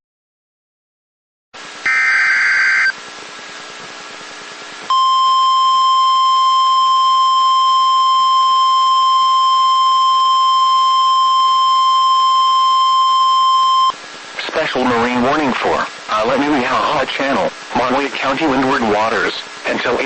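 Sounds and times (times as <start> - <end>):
static hiss: 1.6 - 6.2, 13.7 - 20.0
steady warning alarm tone: 1.9 - 3.0, 4.9 - 13.9
warbling digital data tones: 1.9 - 3.0.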